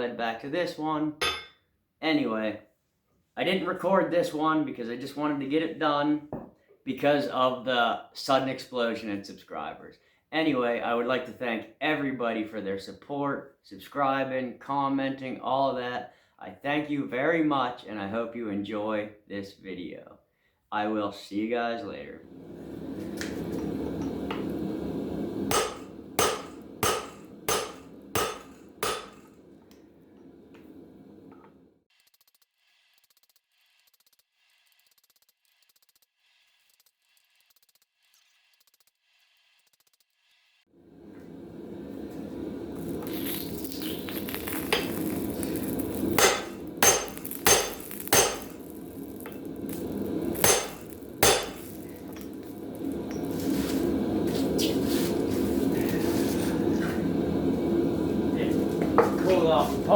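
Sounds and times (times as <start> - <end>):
hammer blows on steel anvil: 1.2 - 1.5, 25.4 - 29.3, 44.7 - 53.3
steady low hum: 22.2 - 31.7, 40.8 - 59.9.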